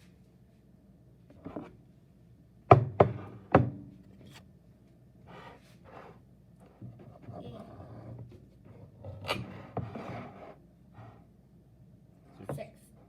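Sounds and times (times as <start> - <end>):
soft scraping: 5.2 - 11.3.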